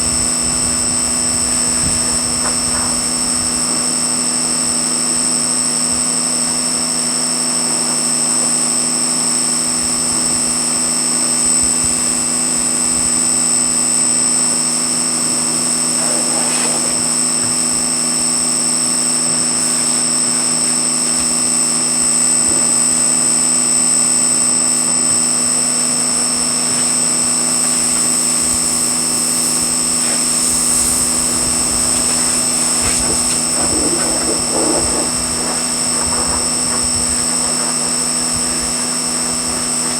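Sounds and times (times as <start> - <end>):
pressure washer spraying water: 14.9 - 21.6, 25.6 - 39.9.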